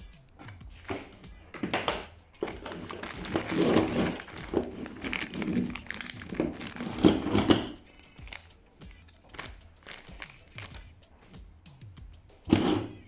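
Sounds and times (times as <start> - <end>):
plastic parts clicking and knocking: 0.4 - 10.9, 12.4 - 13.0
rustling of packaging: 0.8 - 10.8.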